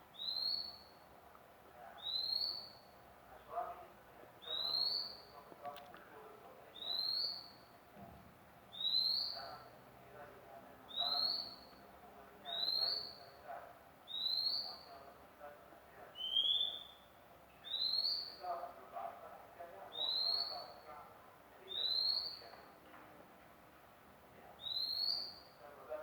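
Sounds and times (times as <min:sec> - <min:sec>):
bird whistling: 0:16.2 - 0:17.0, 0:17.7 - 0:18.3, 0:24.6 - 0:25.4.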